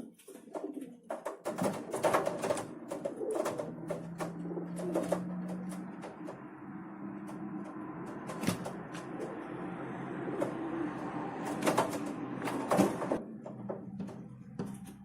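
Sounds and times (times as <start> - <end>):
pigeons cooing: 0.0 - 13.2
pigeons tapping and scuffling: 0.0 - 15.0.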